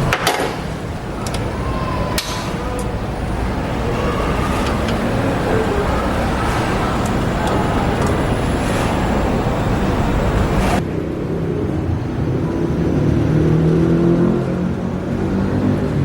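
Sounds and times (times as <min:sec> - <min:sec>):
steady vehicle noise: 0:00.0 - 0:16.0
faint clicks: 0:01.2 - 0:10.7.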